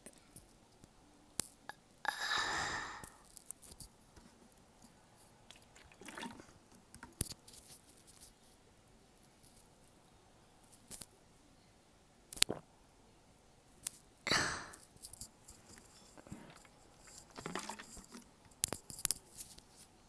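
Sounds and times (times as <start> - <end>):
mouth sounds eating candy: 1.7 - 3.3.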